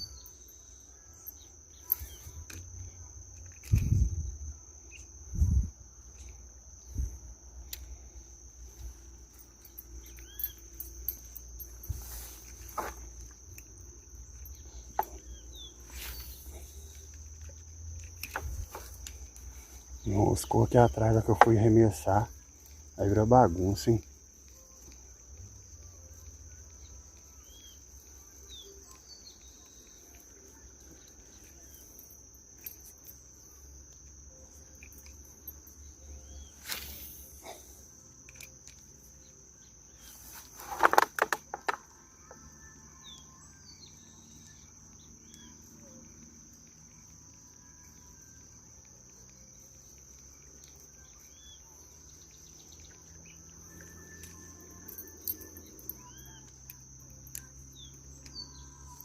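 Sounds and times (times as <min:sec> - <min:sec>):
faint bird chirps: 0:00.0 - 0:17.7, 0:18.3 - 0:32.8, 0:42.0 - 0:59.0
insects trilling: 0:00.0 - 0:59.0.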